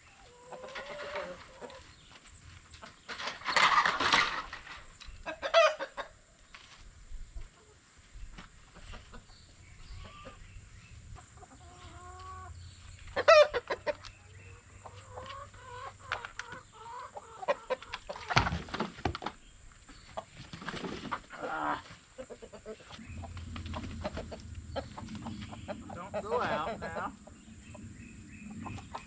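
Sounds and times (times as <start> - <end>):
chickens clucking: 0.0 - 29.0
chicken squawk: 5.2 - 6.1, 9.9 - 10.5, 11.2 - 18.3, 21.2 - 27.3.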